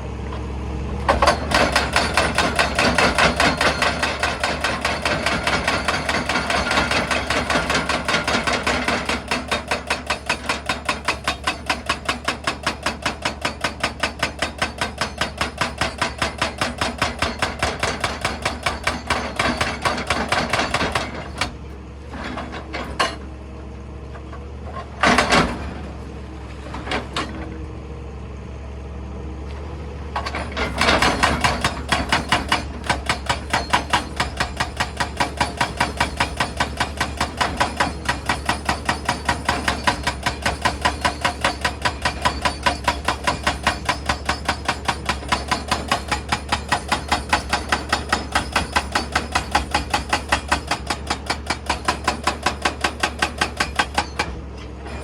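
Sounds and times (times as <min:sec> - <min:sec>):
hydraulic rock breaker hammering stone: 0:01.0 - 0:21.6, 0:25.0 - 0:25.8, 0:30.2 - 0:55.0
low machine engine drone: 0:21.6 - 0:30.6.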